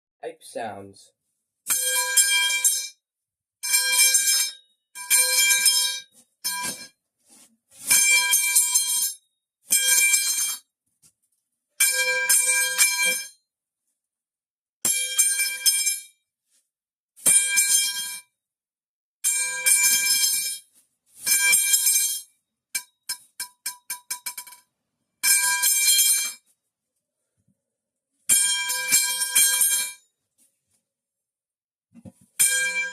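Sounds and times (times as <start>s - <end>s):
metal pipe clanging: 22.8s - 24.6s.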